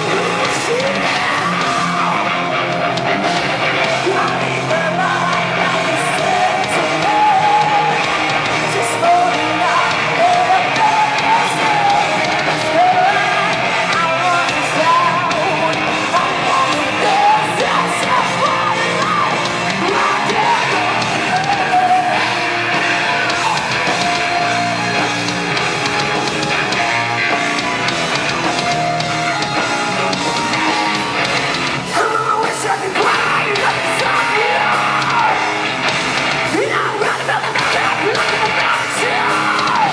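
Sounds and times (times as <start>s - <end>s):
person singing and yelling: 0.0s - 2.8s, 3.4s - 25.0s, 31.8s - 35.8s, 36.4s - 39.9s
live rock band playing: 0.0s - 39.9s.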